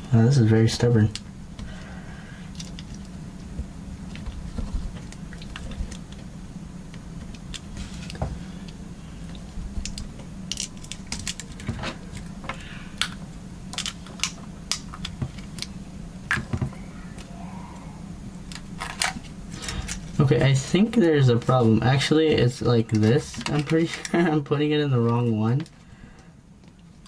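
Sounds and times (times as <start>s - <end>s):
steady low hum: 0.0s - 27.0s
cable connectors clicking and tapping: 9.8s - 15.7s.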